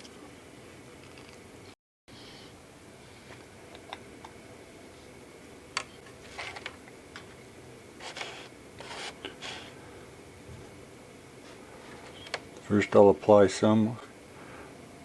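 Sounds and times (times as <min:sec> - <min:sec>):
rustles and scrapes of handling: 0:06.0 - 0:06.8, 0:08.0 - 0:09.8.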